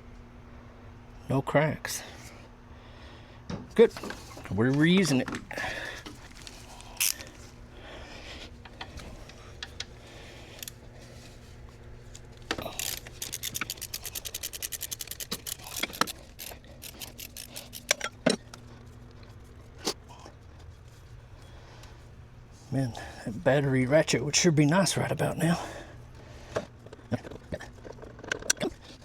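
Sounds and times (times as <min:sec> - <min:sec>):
hand ratchet clicking: 0:07.0 - 0:07.3, 0:12.6 - 0:18.2.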